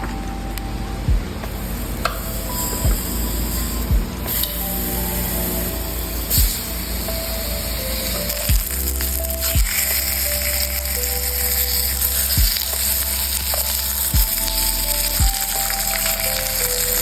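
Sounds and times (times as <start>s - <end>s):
deep falling bass hits: 0.0s - 4.9s
background music: 0.0s - 17.0s
meat sizzling on grill: 2.2s - 17.0s.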